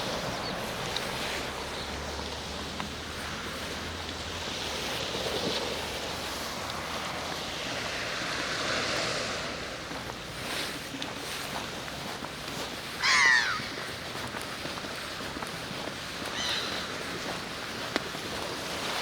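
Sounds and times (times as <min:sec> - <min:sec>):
wind on microphone: 0:00.0 - 0:11.0
small waves washing onto shore: 0:00.0 - 0:19.0.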